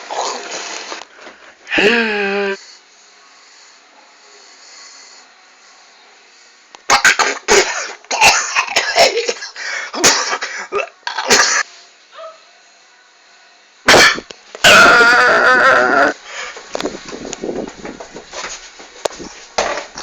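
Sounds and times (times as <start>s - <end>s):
man's wavering vocal outburst: 1.7s - 2.6s, 14.7s - 16.2s
man sneezing and coughing: 6.9s - 11.6s, 13.9s - 14.9s.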